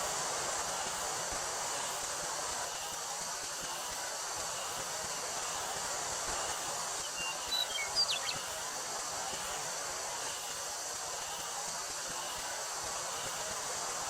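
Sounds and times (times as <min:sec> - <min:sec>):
cicadas droning: 0:00.0 - 0:14.0
wind through wheat field: 0:00.0 - 0:14.0
bird chirping: 0:07.0 - 0:08.5.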